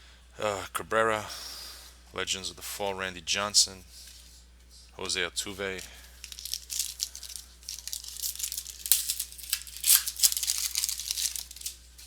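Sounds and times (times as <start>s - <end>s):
cards and wrappers rustling: 5.4s - 12.0s.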